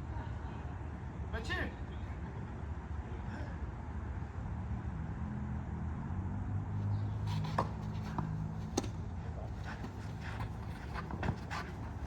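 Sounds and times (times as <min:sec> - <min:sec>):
tennis ball struck by rackets: 0:07.2 - 0:12.0.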